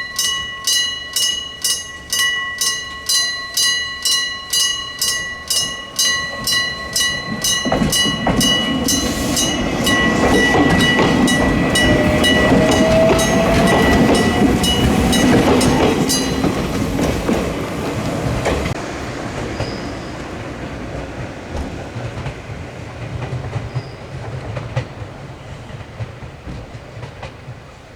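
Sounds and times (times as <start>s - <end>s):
level crossing bell ringing: 0.0s - 17.3s
train wheels clattering over rails: 4.6s - 27.9s.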